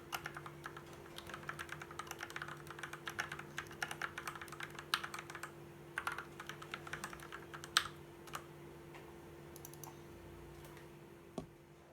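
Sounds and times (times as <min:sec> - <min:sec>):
mechanical keyboard typing: 0:00.1 - 0:08.5.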